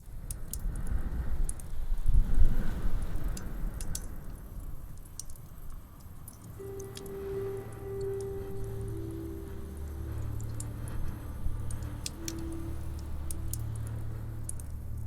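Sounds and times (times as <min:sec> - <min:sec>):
soft steady musical tone: 0:06.5 - 0:15.0.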